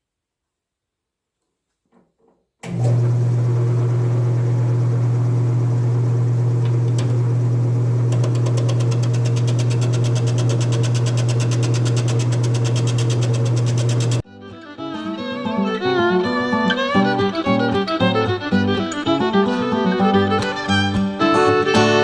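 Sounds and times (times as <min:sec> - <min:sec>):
turning tool cutting wood: 0:02.6 - 0:14.2
wood lathe humming: 0:02.6 - 0:14.2.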